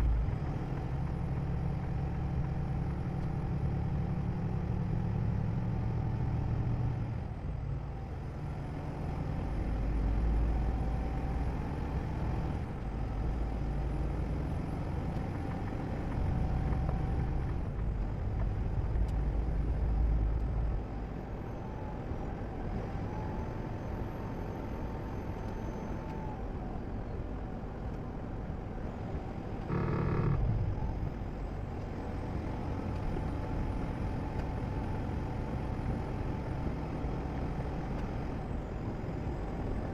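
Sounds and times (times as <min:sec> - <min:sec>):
vehicle road and engine noise: 0:00.0 - 0:39.9
short horn-like tone: 0:29.7 - 0:30.6.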